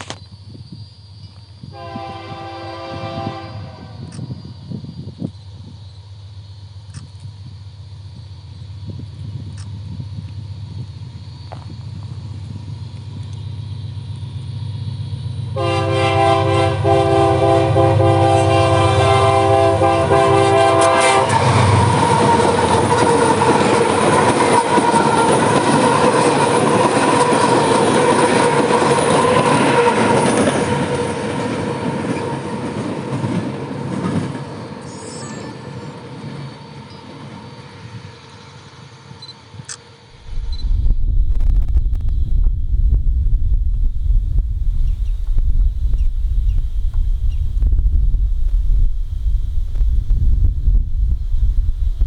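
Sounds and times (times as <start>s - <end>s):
diesel locomotive engine rumbling: 0.3s - 39.2s, 40.0s - 52.0s
train air horn: 1.7s - 4.1s, 15.6s - 26.2s
train wheels rolling on rail: 4.0s - 15.6s, 16.4s - 39.2s, 40.2s - 52.0s
steady whine: 40.2s - 52.0s.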